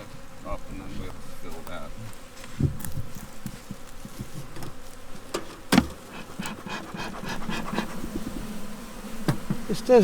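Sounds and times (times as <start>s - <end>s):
bees buzzing: 0.0s - 10.0s
sharp knocks on hive equipment: 2.6s - 6.6s, 9.2s - 9.7s.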